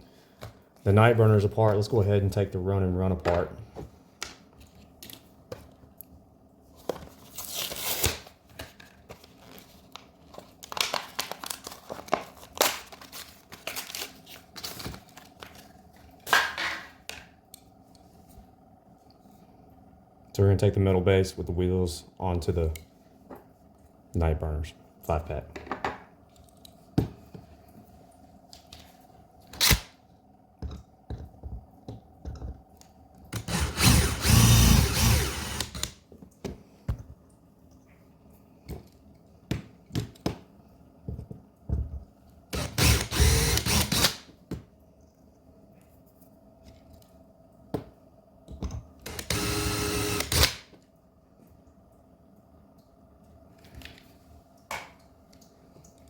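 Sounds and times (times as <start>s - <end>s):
small power drill: 33.3s - 35.9s, 42.5s - 44.2s, 49.0s - 50.6s.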